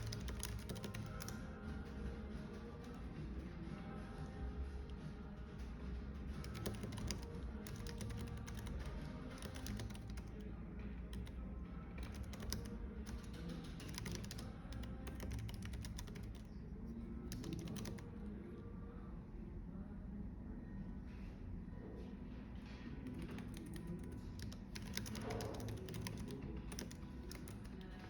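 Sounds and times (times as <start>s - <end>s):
typing on keyboard: 0.0s - 3.2s, 5.5s - 16.6s, 17.2s - 18.3s, 23.0s - 28.0s
soft music: 0.0s - 28.0s.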